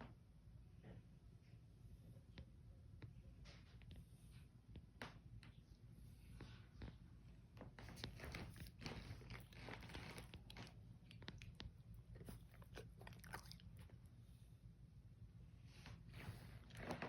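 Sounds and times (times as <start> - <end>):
dog chewing: 7.7 - 14.3.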